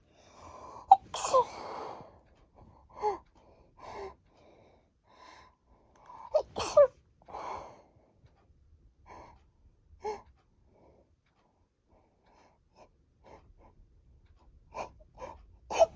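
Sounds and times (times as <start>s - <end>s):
person breathing: 0.0s - 0.9s, 1.5s - 6.4s, 7.3s - 8.2s
person sneezing: 0.9s - 1.6s, 6.3s - 6.9s.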